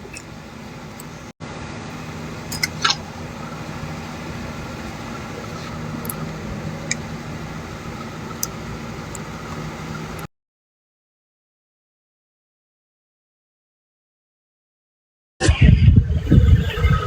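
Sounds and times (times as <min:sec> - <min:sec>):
car engine hum: 0:00.0 - 0:10.3
sharp clicks: 0:08.3 - 0:10.3.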